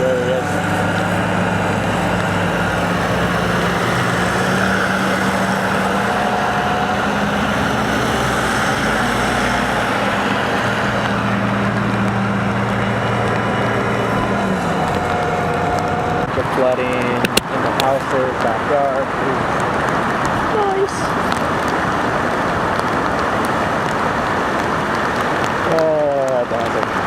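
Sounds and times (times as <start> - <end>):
vehicle engines idling: 0.0 - 27.0
constant wide hiss: 8.8 - 27.0.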